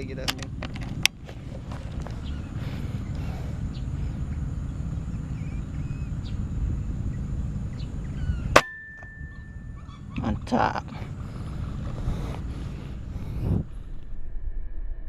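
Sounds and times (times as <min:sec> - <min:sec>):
low rumbling microphone noise: 0:00.0 - 0:15.0
faint bird chirps: 0:01.8 - 0:13.6.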